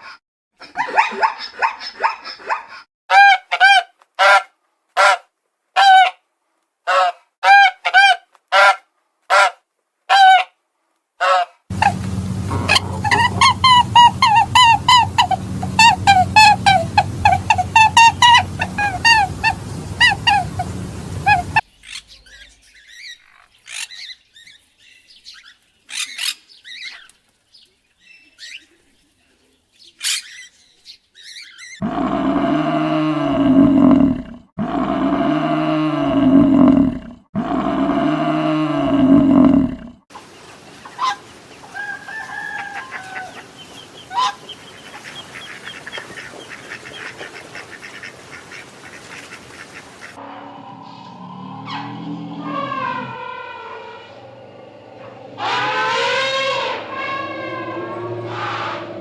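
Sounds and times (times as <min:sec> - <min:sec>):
loud long poultry calls: 0:02.7 - 0:05.2, 0:05.8 - 0:06.2, 0:06.9 - 0:10.5, 0:11.2 - 0:22.5, 0:40.9 - 0:59.0
birds chirping: 0:11.7 - 0:37.0, 0:38.7 - 0:59.0.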